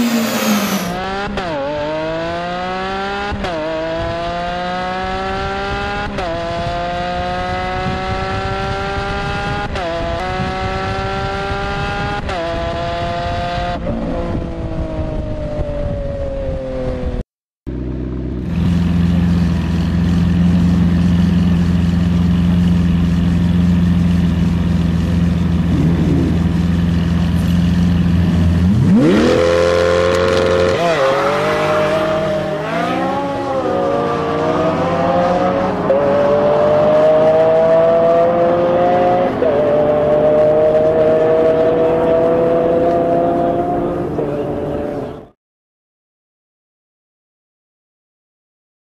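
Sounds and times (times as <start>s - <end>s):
car engine accelerating and revving: 0.0s - 45.3s.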